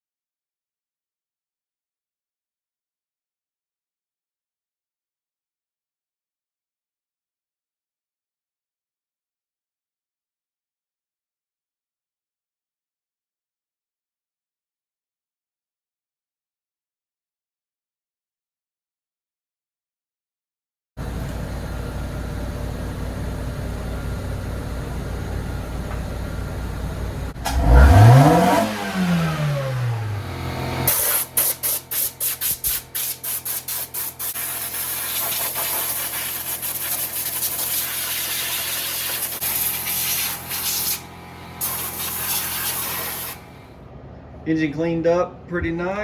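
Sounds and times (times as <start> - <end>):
engine running: 21.0 - 46.0
water spraying from hose nozzle: 30.9 - 41.0, 41.6 - 43.6.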